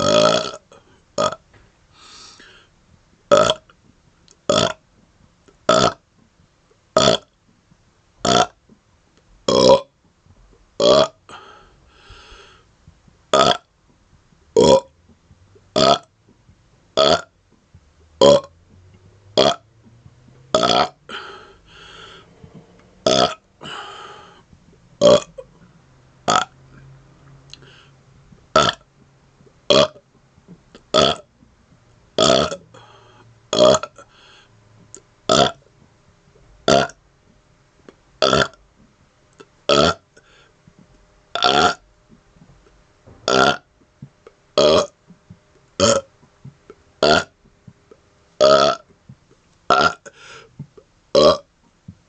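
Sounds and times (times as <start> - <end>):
man burping: 0.0 - 1.4, 3.3 - 3.7, 4.5 - 4.8, 5.7 - 6.0, 7.0 - 7.3, 8.2 - 8.6, 9.5 - 9.9, 10.8 - 11.6, 13.3 - 13.7, 14.6 - 14.9, 15.8 - 16.1, 17.0 - 17.3, 18.2 - 18.5, 19.4 - 19.6, 20.5 - 22.2, 23.0 - 25.6, 26.3 - 26.6, 28.5 - 28.8, 29.7 - 30.0, 30.9 - 31.3, 32.2 - 32.9, 33.5 - 34.1, 35.3 - 35.6, 36.7 - 37.0, 38.2 - 38.6, 39.7 - 40.1, 41.4 - 41.8, 43.2 - 43.7, 44.6 - 45.0, 45.8 - 46.1, 47.0 - 47.4, 48.4 - 48.8, 49.7 - 50.4, 51.2 - 51.5.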